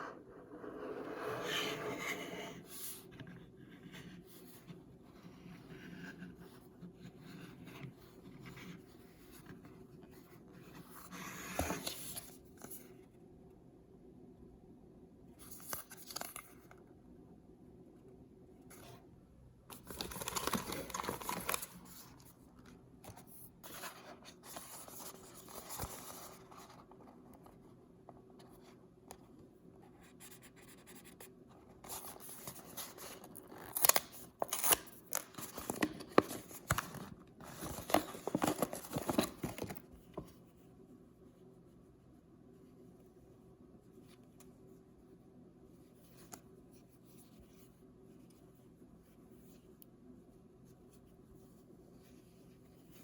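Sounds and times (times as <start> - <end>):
paper packaging rustling: 15.4 - 16.6, 19.7 - 27.0, 31.8 - 40.2.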